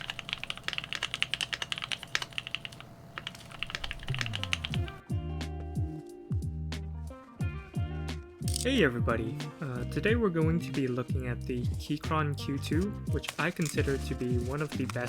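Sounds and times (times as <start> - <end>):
mechanical keyboard typing: 0.0 - 5.0, 13.2 - 15.0
music with bass and guitar: 4.2 - 15.0.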